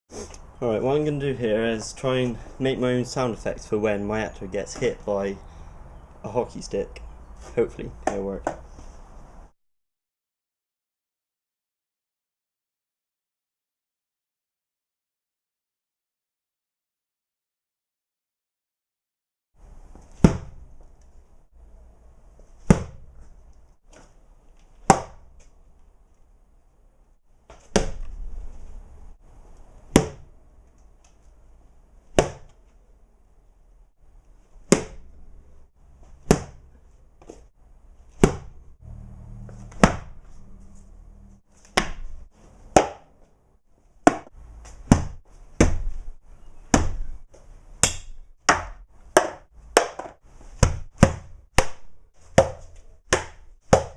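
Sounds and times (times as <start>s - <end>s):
sharp whacks on objects: 20.2s - 20.6s, 22.6s - 23.0s, 24.8s - 25.2s, 27.5s - 28.1s, 29.9s - 30.3s, 32.1s - 32.5s, 34.7s - 35.1s, 36.2s - 36.6s, 38.2s - 38.6s, 39.6s - 40.2s, 47.8s - 53.9s.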